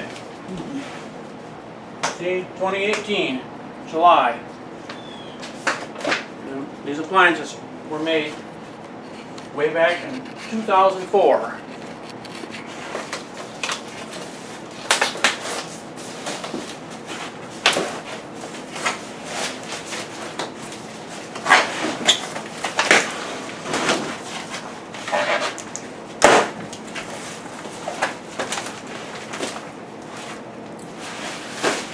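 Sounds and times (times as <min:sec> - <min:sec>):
objects scraping: 0:21.1 - 0:31.9.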